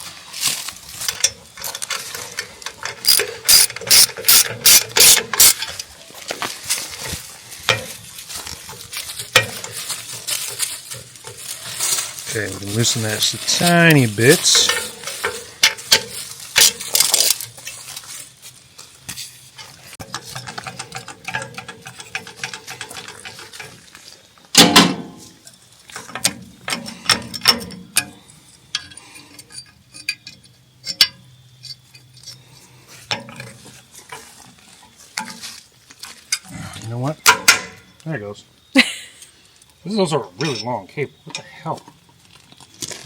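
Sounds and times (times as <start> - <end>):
metal tools clinking: 0.9 - 5.9, 7.0 - 18.4, 19.6 - 23.8, 40.3 - 41.7
loud metal clank: 3.0 - 5.7, 24.6 - 25.4, 37.2 - 37.9.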